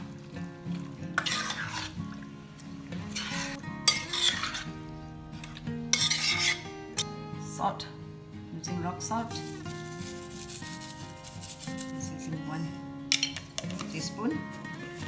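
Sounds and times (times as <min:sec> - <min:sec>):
utensil stirring in a bowl: 0:00.0 - 0:04.8, 0:05.4 - 0:06.7, 0:09.2 - 0:15.0
soft background music: 0:00.0 - 0:15.0.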